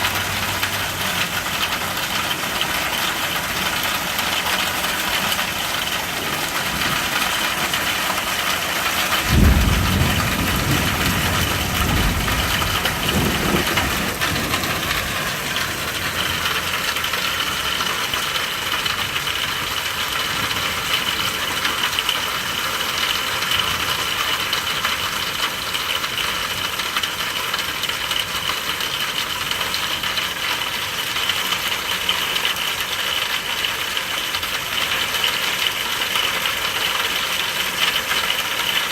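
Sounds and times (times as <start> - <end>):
steady rain falling: 0.0 - 38.9
thunder rumbling: 9.2 - 17.1.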